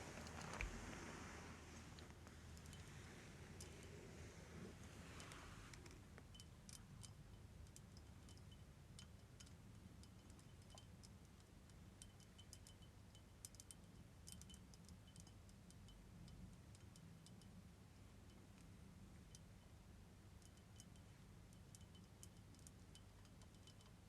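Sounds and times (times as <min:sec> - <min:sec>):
soft breath: 0:00.0 - 0:06.0
faint crackling clicks: 0:00.0 - 0:12.8.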